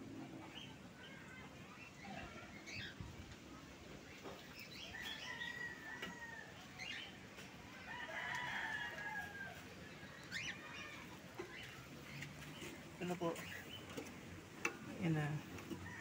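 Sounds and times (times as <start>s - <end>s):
rooster crowing: 4.9s - 6.8s, 7.8s - 9.7s, 15.8s - 16.0s.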